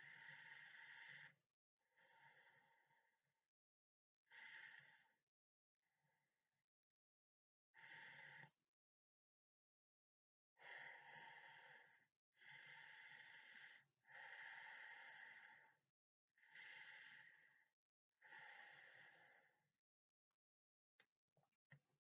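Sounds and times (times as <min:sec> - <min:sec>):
slow heavy breathing: 0:00.1 - 0:01.4, 0:10.6 - 0:15.8, 0:16.4 - 0:19.7.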